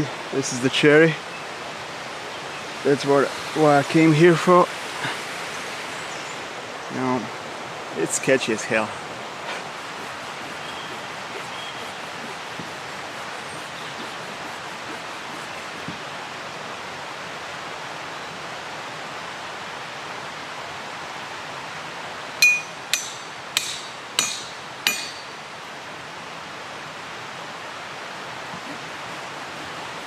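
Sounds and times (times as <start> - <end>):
steady rushing hiss: 0.0 - 30.0
ringing metallic clinks: 22.4 - 25.4.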